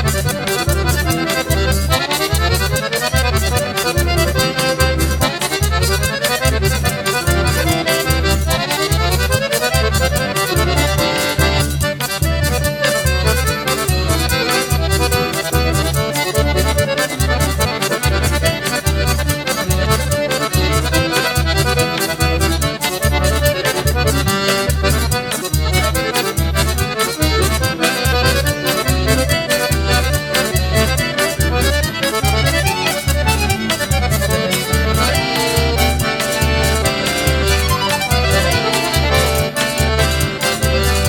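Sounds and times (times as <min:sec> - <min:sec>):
accordion melody: 0:00.0 - 0:41.0
triangle pattern: 0:00.8 - 0:41.0
bass drum beat: 0:03.4 - 0:41.0.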